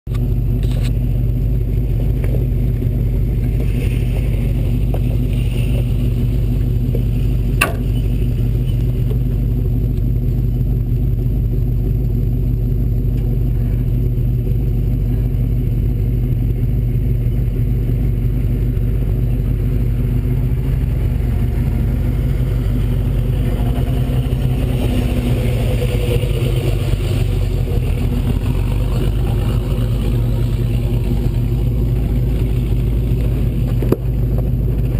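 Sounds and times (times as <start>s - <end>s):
truck engine running: 0.0s - 34.9s
sharp knock: 7.6s - 7.9s.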